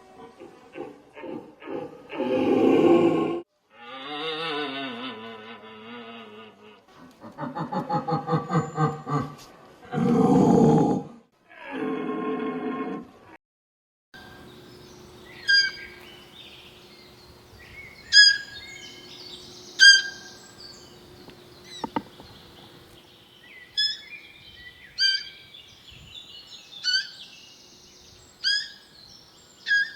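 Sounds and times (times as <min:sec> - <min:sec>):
birds chirping faintly: 0:14.2 - 0:29.9
deer fawn peeping calls: 0:14.3 - 0:25.6, 0:26.7 - 0:27.5, 0:28.3 - 0:29.0, 0:29.6 - 0:29.9.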